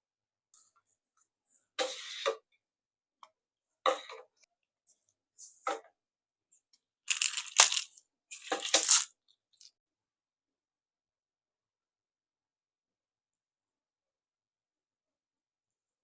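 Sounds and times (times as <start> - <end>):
handling clicks and clinks: 7.1 - 9.1.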